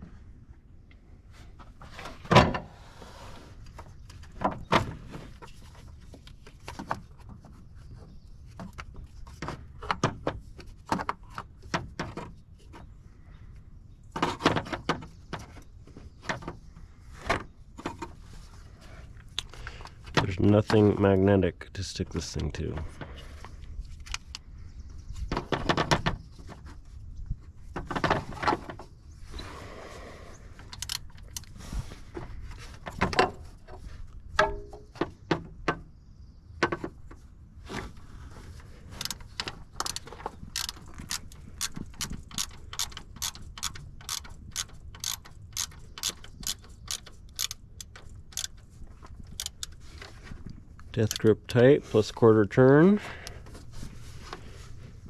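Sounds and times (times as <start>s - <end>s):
ratchet wrench clicking: 30.8s - 31.5s, 39.8s - 48.6s, 49.4s - 49.7s
metal clanks and handling: 38.8s - 51.3s.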